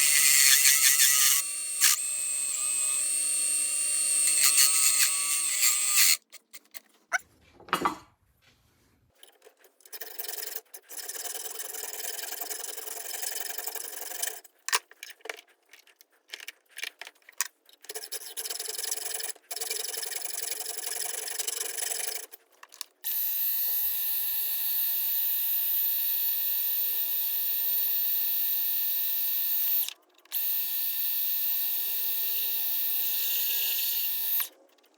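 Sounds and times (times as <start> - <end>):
lathe motor whine: 0.0 - 6.2.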